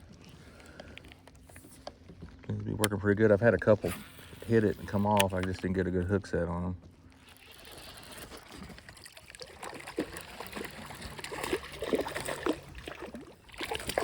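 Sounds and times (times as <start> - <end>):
water splashing around kayak: 6.8 - 14.0.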